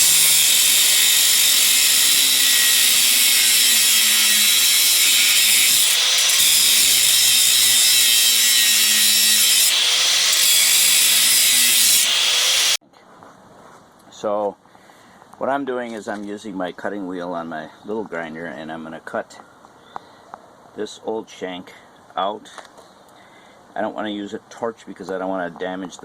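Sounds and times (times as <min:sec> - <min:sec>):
angle grinder cutting steel: 0:00.0 - 0:12.8.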